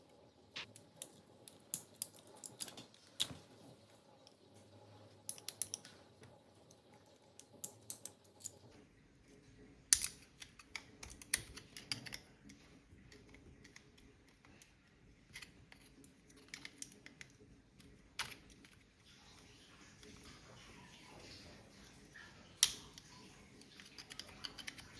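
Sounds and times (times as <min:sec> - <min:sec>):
small hard parts clicking: 0:00.6 - 0:03.6, 0:05.3 - 0:08.7, 0:09.9 - 0:20.2, 0:22.6 - 0:24.9.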